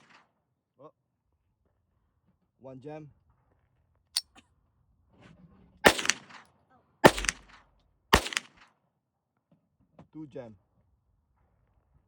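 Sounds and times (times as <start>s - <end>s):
pistol shots ringing: 5.9s - 6.4s, 7.0s - 7.5s, 8.2s - 8.6s
sharp metallic click: 7.1s - 7.5s.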